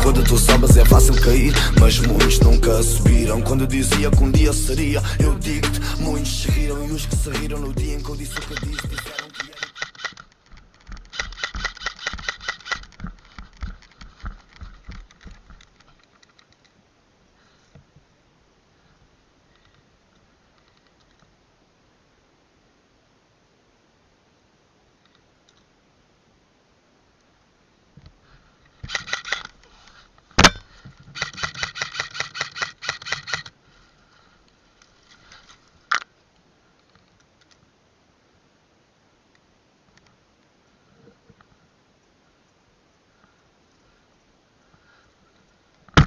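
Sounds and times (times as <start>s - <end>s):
airsoft gun shots: 30.4s - 30.6s.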